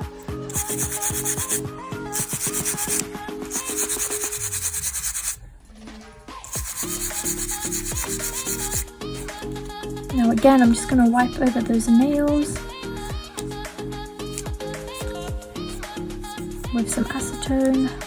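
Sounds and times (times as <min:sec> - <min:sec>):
background music with a beat: 0:00.0 - 0:05.2, 0:06.3 - 0:18.0
brush sweeping over nails: 0:00.5 - 0:05.4, 0:06.5 - 0:09.5.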